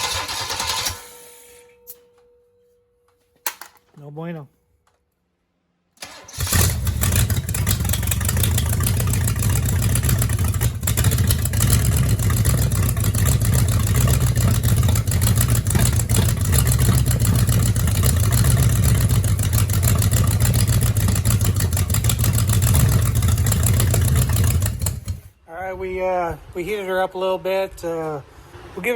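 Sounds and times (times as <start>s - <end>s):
big-block engine running: 6.0s - 25.4s.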